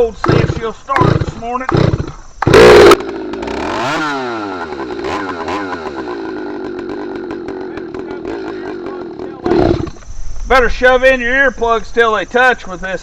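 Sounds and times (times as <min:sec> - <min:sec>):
chainsaw revving and running: 0:00.2 - 0:10.0.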